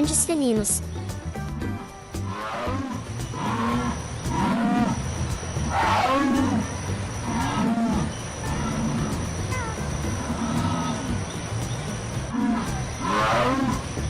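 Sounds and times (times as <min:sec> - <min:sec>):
jaguar roaring: 0:02.2 - 0:11.4, 0:12.2 - 0:14.0.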